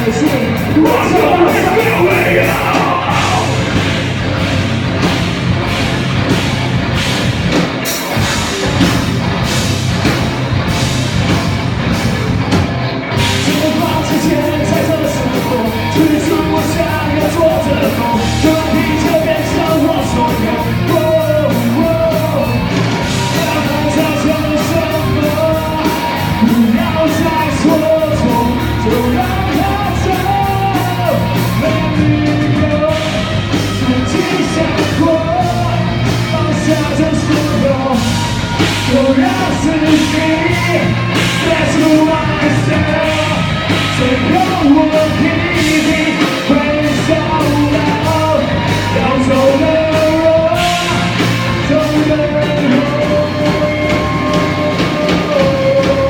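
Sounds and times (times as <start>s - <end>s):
person singing and shouting: 0.0s - 4.0s
live rock band playing: 0.0s - 56.0s
drum beat: 0.8s - 12.3s.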